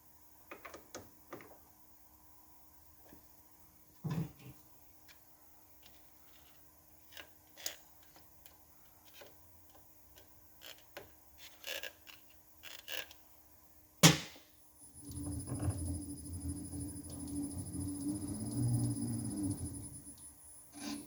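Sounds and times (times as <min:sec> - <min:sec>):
motor humming: 0:14.8 - 0:21.0.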